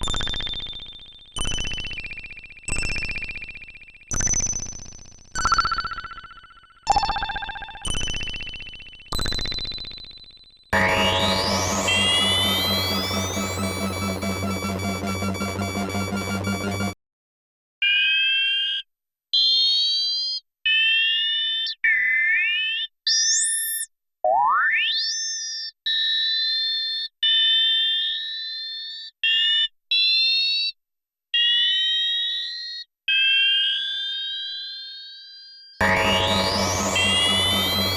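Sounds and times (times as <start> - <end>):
short electronic blips: 10.8 - 17.0, 35.8 - 37.9
synth sweep climbing steeply: 10.8 - 17.0, 35.8 - 37.9.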